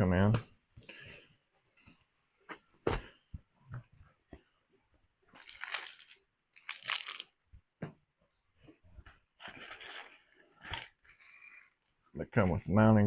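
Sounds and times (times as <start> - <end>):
packaging rustling and crinkling: 5.4 - 7.4, 9.4 - 11.7.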